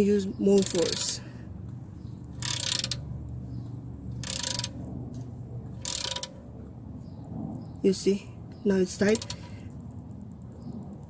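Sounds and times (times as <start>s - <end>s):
low steady hum: 0.0s - 11.0s
socket ratchet clicking: 0.6s - 1.2s, 2.3s - 3.1s, 4.2s - 4.8s, 5.8s - 6.4s, 9.0s - 9.5s.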